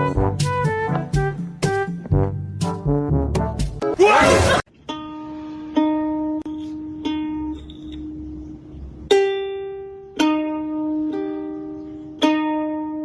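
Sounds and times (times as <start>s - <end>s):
plucked string instrument notes: 4.3s - 13.0s.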